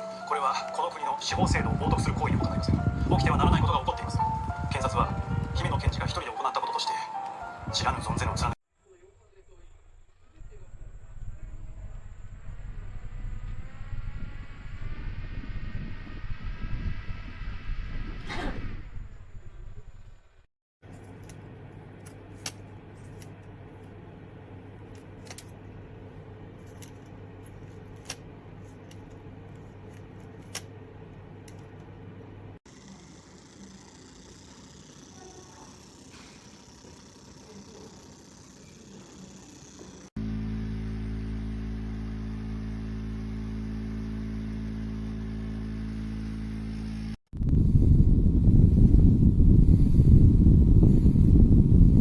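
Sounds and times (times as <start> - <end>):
handheld fan motor hum: 32.7 - 52.0.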